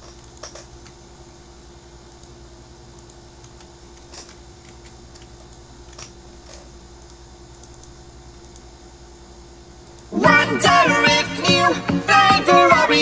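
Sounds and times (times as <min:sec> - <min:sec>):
steady electrical hum: 0:00.0 - 0:13.0
keyboard and mouse clicks: 0:03.0 - 0:08.7.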